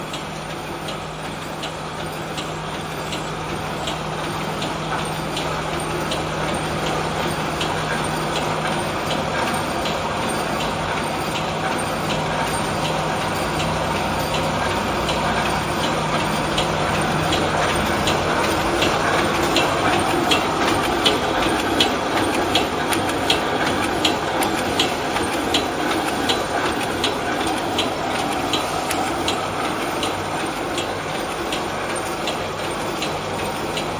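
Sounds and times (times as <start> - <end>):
mechanical clatter: 4.6 - 33.9
low machine hum: 10.9 - 33.9.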